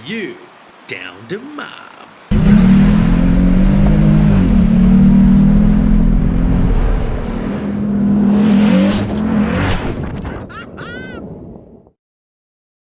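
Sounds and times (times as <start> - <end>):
vehicle engine running hard: 2.3 - 9.7.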